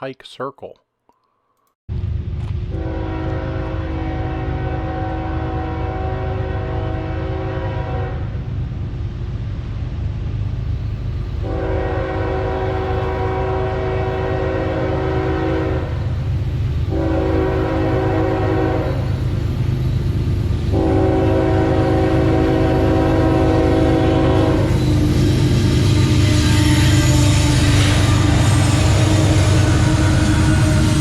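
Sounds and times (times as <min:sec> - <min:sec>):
train rumbling: 0:01.9 - 0:31.0
locomotive air horn blasts: 0:02.7 - 0:08.4, 0:11.4 - 0:16.0, 0:16.9 - 0:19.2, 0:20.7 - 0:31.0.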